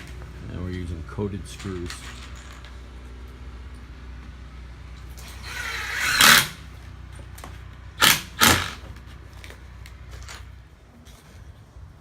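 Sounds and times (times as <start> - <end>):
power screwdriver driving screws: 5.2 - 6.6, 8.0 - 8.9.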